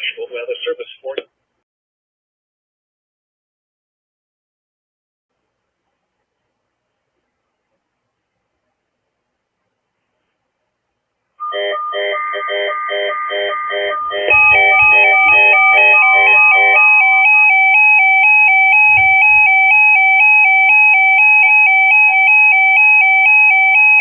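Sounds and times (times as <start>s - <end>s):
warbling alert tone: 11.4s - 20.7s
pitched electronic beeps: 11.4s - 21.6s.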